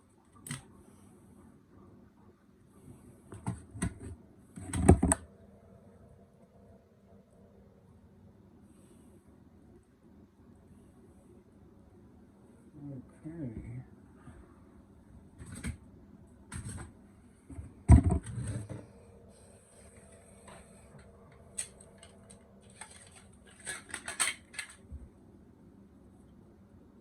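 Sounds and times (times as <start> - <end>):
tools and plastic parts clicking: 21.3 - 24.9.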